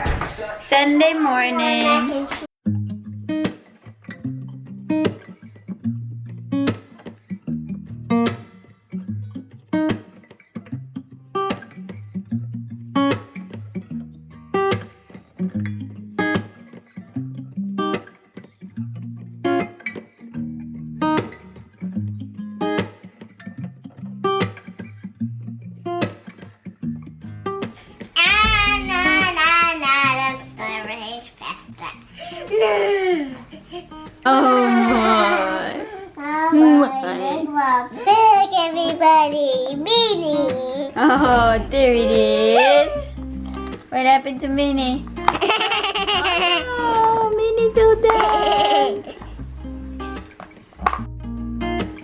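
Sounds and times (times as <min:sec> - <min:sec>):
strummed acoustic guitar music: 0:02.6 - 0:52.0
loud wavering voice: 0:41.0 - 0:43.1.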